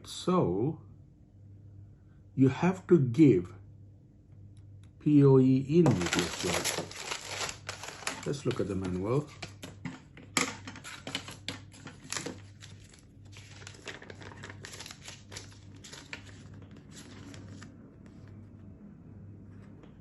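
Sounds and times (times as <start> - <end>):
paper rustling and crinkling: 5.8 - 18.4.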